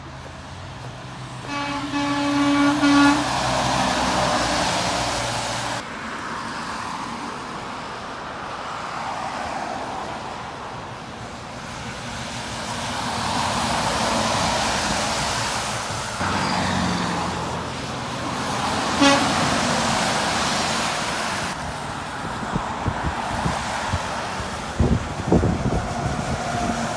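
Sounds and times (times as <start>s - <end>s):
passing traffic: 0.0s - 26.9s
truck horn blasting: 1.4s - 5.8s, 16.2s - 20.0s.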